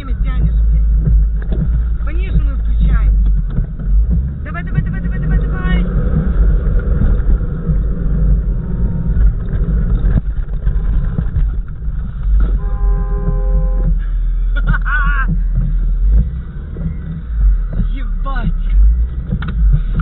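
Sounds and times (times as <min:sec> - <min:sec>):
off-road vehicle engine rumbling: 0:00.0 - 0:20.0
horn-like tone: 0:12.5 - 0:14.0.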